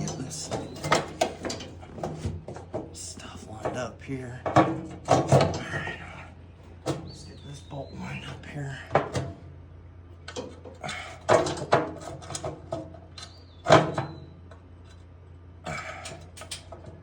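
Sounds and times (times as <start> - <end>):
metal tools clinking and rattling: 0.0 - 3.8.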